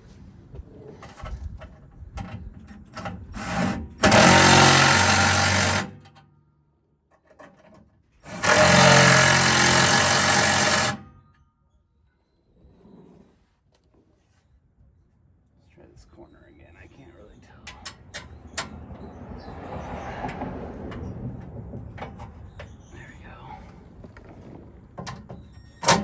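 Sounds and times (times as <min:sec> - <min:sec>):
handheld power tool running: 0:03.4 - 0:06.0, 0:08.3 - 0:11.1
knocks and rattles: 0:07.2 - 0:11.0, 0:20.1 - 0:22.9.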